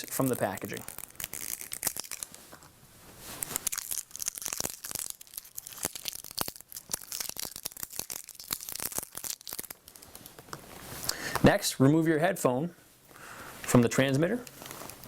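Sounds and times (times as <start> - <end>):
packaging tearing and crinkling: 0.0 - 2.6, 3.2 - 10.6.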